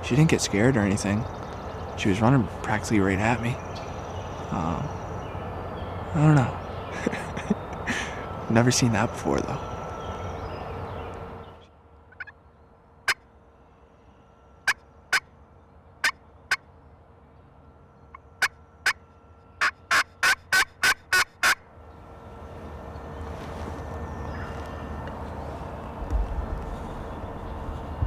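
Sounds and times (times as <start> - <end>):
turkey call yelping: 19.6 - 21.6.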